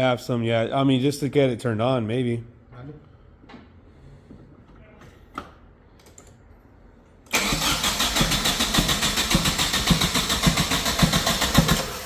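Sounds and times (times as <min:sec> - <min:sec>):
engine cranking on starter: 0:07.3 - 0:12.0.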